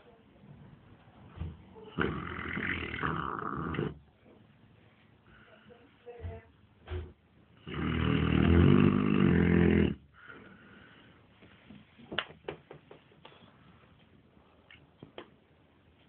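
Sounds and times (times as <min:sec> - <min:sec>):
dog snoring loudly: 0:01.9 - 0:04.0, 0:07.6 - 0:10.1.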